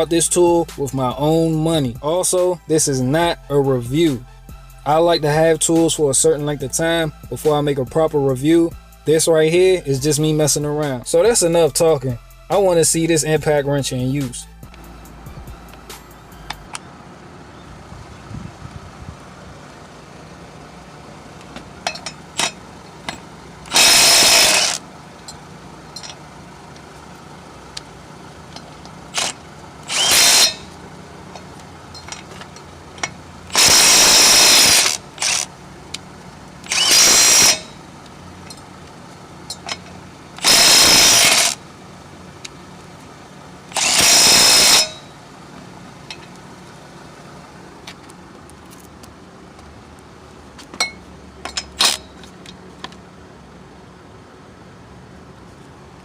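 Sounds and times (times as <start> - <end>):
impact wrench hammering: 21.8 - 25.4, 28.6 - 35.5, 36.6 - 37.8, 39.5 - 41.6, 43.7 - 45.1, 50.7 - 52.3
small metal clicks and clinks: 31.3 - 33.2.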